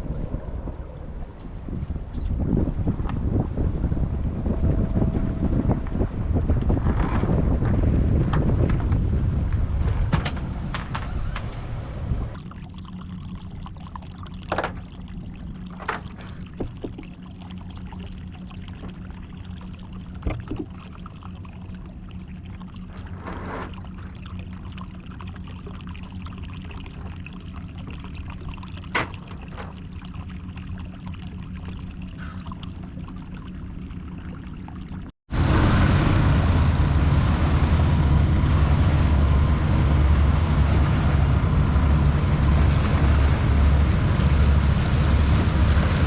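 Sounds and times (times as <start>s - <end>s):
wind gust on microphone: 0.0s - 12.4s
boat engine idling: 0.0s - 46.0s
water splashing against hull: 0.0s - 46.0s.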